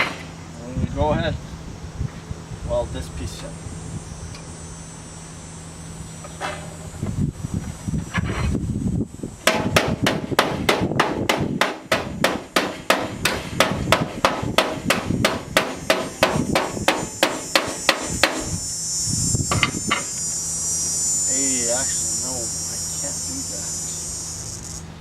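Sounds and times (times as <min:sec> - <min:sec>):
hammer striking sheet metal: 0:09.5 - 0:18.5.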